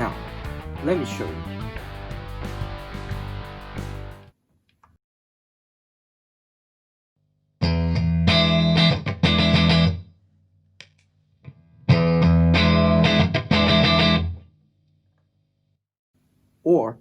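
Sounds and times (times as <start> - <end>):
compressed electric guitar: 0.0 - 4.3, 7.6 - 10.1, 11.5 - 14.5.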